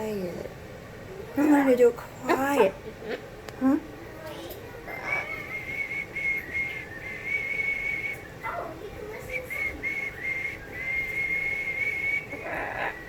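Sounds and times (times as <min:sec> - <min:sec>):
cockatoo whistling: 0:04.9 - 0:13.0.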